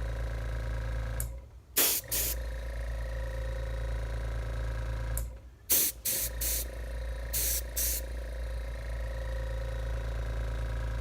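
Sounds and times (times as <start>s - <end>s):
compressor humming: 0.0s - 11.0s
airbrush spraying hiss: 1.8s - 2.4s, 5.7s - 6.7s, 7.4s - 8.0s.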